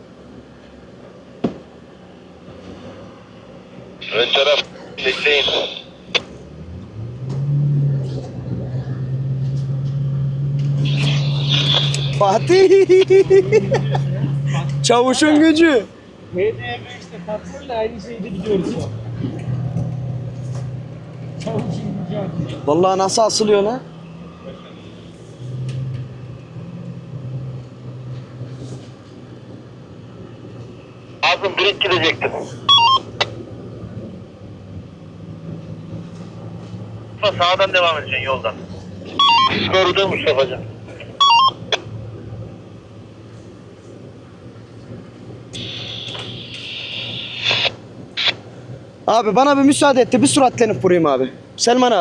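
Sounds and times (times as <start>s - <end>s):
engine droning under load: 0.0s - 52.0s
radio static hiss: 4.0s - 6.2s, 10.8s - 13.2s, 31.2s - 32.6s, 37.2s - 38.6s, 39.4s - 41.2s, 45.5s - 48.4s.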